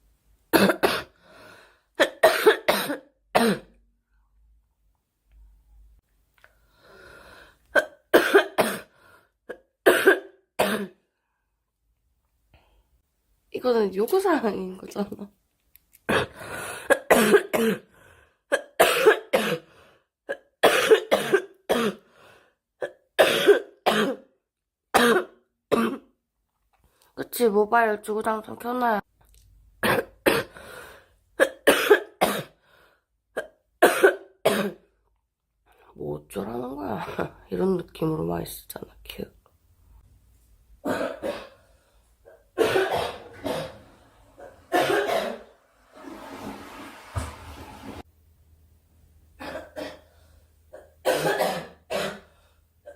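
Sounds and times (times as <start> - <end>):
girl coughing: 0.5 - 1.2, 2.0 - 3.8, 7.8 - 8.9, 9.5 - 11.0, 16.1 - 17.9, 18.5 - 19.7, 20.3 - 22.0, 22.8 - 24.3, 25.0 - 26.1, 29.8 - 30.5, 31.4 - 32.6, 33.4 - 34.8, 40.8 - 41.6, 42.3 - 45.5, 49.4 - 50.1, 50.8 - 52.3
breathy breathing: 1.1 - 2.0, 6.5 - 7.7, 8.9 - 9.4, 16.3 - 16.9, 17.9 - 18.5, 22.0 - 22.6, 30.5 - 31.2, 32.6 - 33.1, 41.4 - 42.3.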